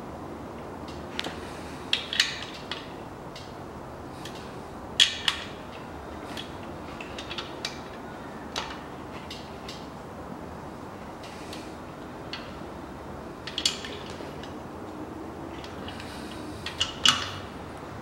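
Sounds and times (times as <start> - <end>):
hand tools clicking on bolts: 13.4 - 14.6, 15.6 - 17.4.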